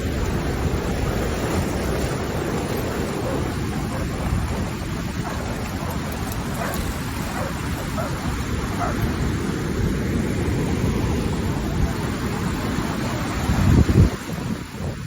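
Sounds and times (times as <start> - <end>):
wind buffeting microphone: 0.0 - 15.0
dog barking: 3.1 - 4.6, 5.2 - 5.9, 6.6 - 9.0.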